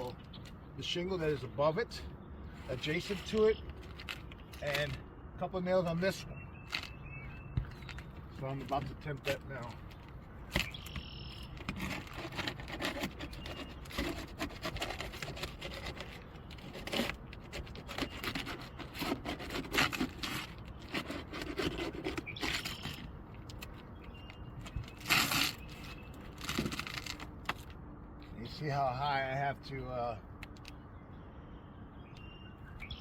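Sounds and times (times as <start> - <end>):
metal tool scraping under shingle: 2.5 - 5.0, 7.6 - 27.7.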